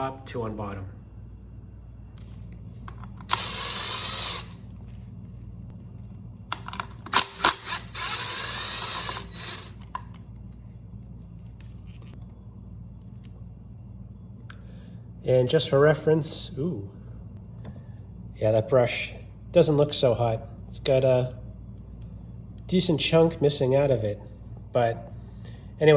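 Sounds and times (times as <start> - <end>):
power driver spinning: 2.8 - 4.7, 6.5 - 10.3.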